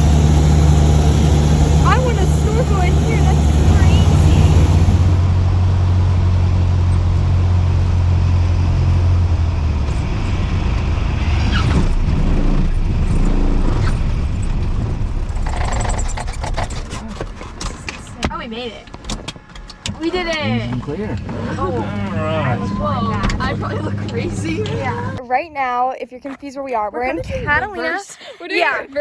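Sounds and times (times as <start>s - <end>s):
small plane engine droning: 0.0s - 8.8s, 20.4s - 25.2s.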